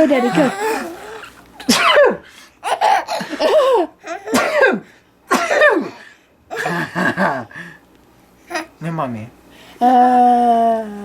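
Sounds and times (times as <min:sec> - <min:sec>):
baby laughing: 0:00.0 - 0:04.8, 0:06.5 - 0:07.4, 0:08.5 - 0:08.8.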